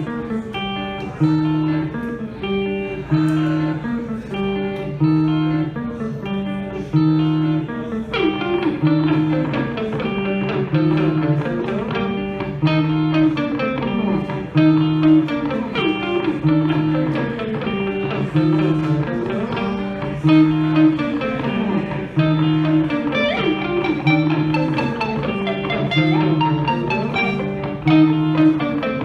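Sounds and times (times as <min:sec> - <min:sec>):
plucked guitar figure: 0:00.0 - 0:29.0.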